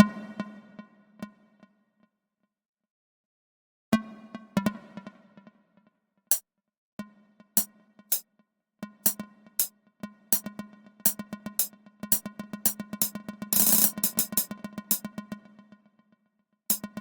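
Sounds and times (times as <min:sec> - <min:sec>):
drum machine beat: 0:11.6 - 0:15.0.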